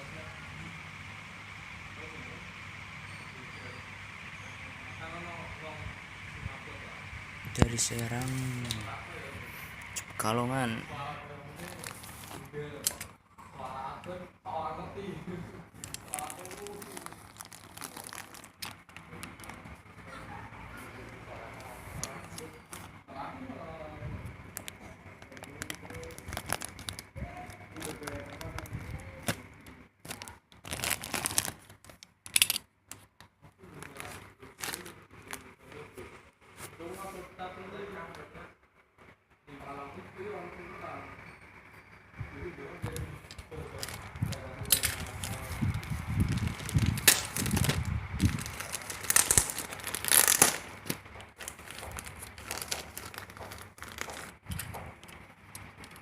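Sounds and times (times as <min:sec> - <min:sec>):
packaging crinkling and rustling: 0:07.6 - 0:09.0, 0:11.5 - 0:13.1, 0:15.7 - 0:19.9, 0:21.3 - 0:23.0, 0:24.5 - 0:35.9, 0:42.8 - 0:56.0.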